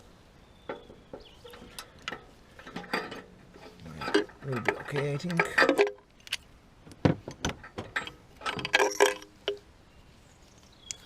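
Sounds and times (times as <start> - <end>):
metal hand tools clinking: 1.5 - 6.0, 7.9 - 9.3.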